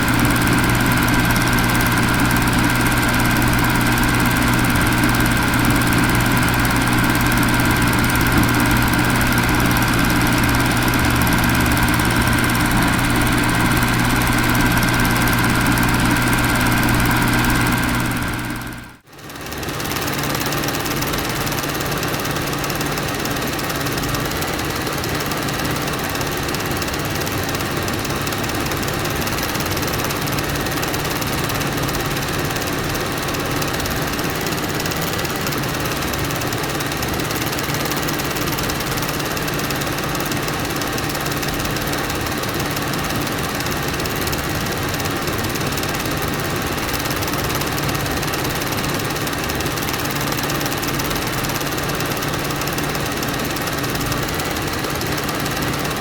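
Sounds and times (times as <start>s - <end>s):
low hum: 0.0s - 19.0s
film projector clattering: 0.0s - 56.0s.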